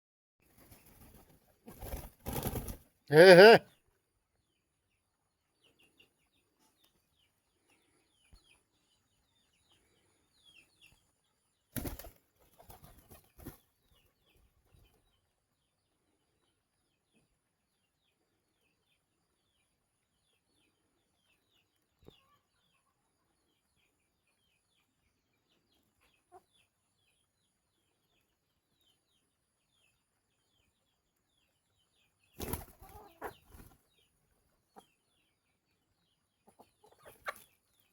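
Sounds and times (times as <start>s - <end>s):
wings flapping: 0.5s - 2.8s, 11.7s - 13.6s, 32.4s - 33.8s
poultry chirping: 12.4s - 37.9s.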